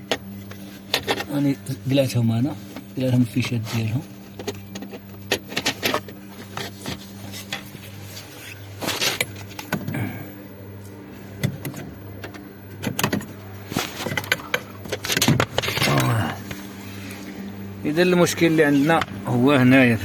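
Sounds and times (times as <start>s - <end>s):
small parts and tools rattling: 0.0s - 1.6s, 3.2s - 7.7s, 12.2s - 16.6s
steady low hum: 0.0s - 20.0s.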